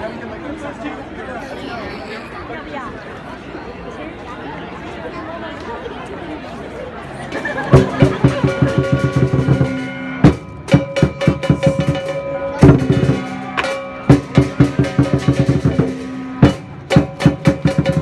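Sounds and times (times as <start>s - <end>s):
drum beaten in fast runs: 7.7s - 18.0s
clashing cymbals: 7.8s - 18.0s.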